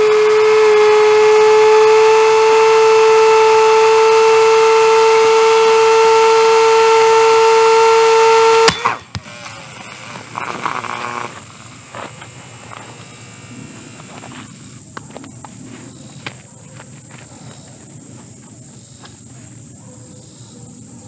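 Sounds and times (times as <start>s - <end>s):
hair dryer whining: 0.0s - 15.8s.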